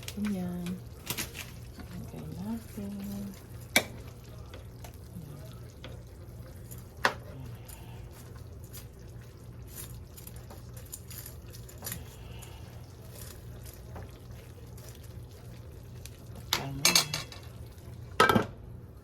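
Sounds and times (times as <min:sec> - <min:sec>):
metal utensils and dishes clinking: 0:16.5 - 0:17.5.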